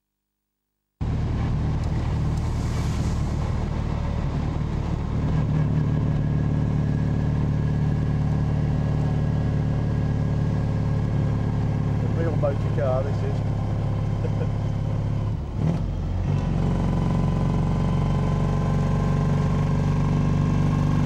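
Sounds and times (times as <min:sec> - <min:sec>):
flat-twin engine running: 0:01.0 - 0:16.0.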